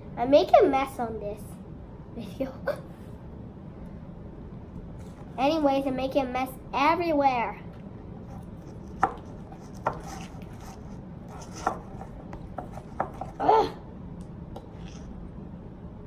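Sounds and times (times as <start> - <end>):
spoon scraping bowl: 8.2 - 13.4
spoon stirring slime: 8.2 - 13.4.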